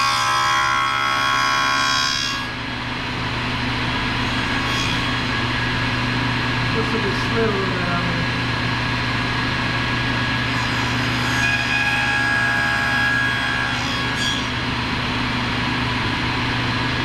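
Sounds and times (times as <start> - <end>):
saw blade cutting wood: 0.0 - 2.6, 4.1 - 5.6, 10.2 - 14.8
table saw motor hum: 0.0 - 17.0.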